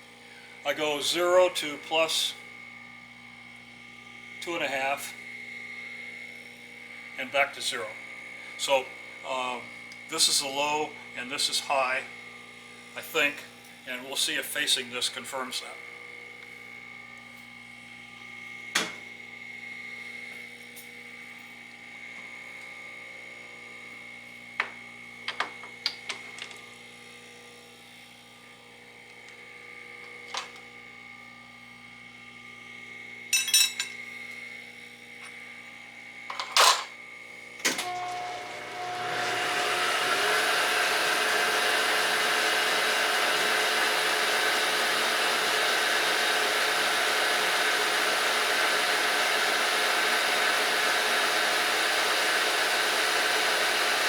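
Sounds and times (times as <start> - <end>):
lathe humming: 0.3 - 17.1, 37.7 - 54.0
lathe running loudly: 0.4 - 16.9, 37.7 - 54.0.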